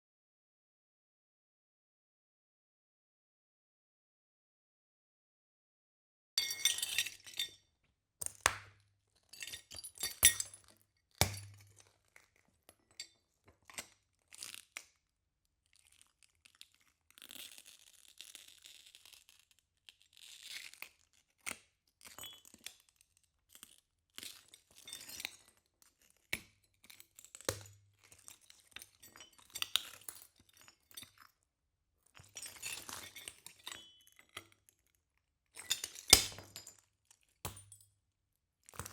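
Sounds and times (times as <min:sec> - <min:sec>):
glass grinding: 0:06.4 - 0:07.5
glass shards crunching: 0:06.4 - 0:07.5.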